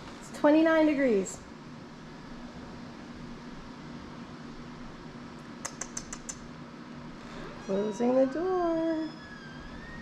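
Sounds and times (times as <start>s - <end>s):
low background hum: 0.0s - 10.0s
light sharp clicks: 5.6s - 6.5s.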